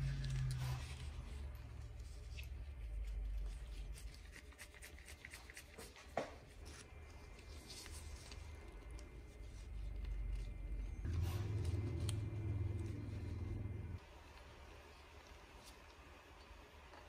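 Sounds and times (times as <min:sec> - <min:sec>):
low hum: 0:00.0 - 0:04.2, 0:06.9 - 0:14.1.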